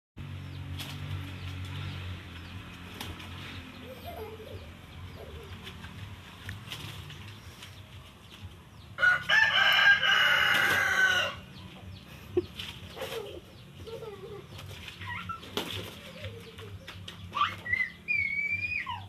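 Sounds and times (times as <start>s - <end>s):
rooster crowing: 9.0s - 11.4s.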